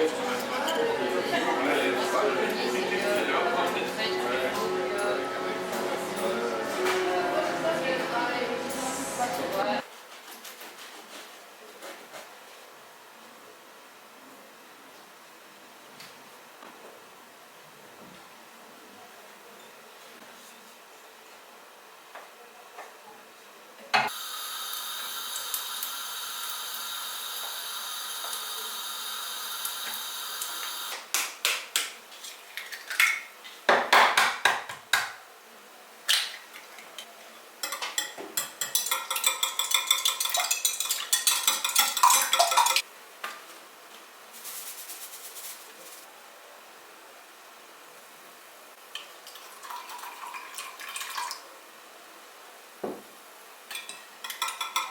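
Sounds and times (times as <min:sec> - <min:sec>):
dishes and cutlery clinking: 0:37.0 - 0:42.8, 0:53.7 - 0:54.9
utensil whisking in a dish: 0:37.6 - 0:42.8, 0:44.3 - 0:46.1.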